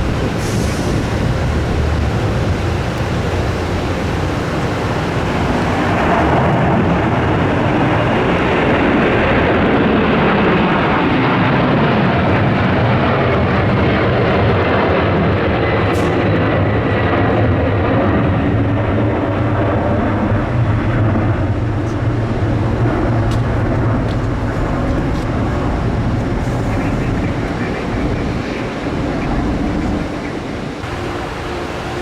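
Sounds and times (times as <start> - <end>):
jet engines roaring on take-off: 0.0 - 32.0.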